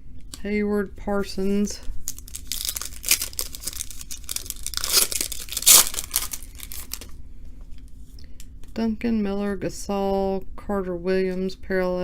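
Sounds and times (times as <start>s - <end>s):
foil wrapper tearing and crinkling: 2.0s - 7.1s.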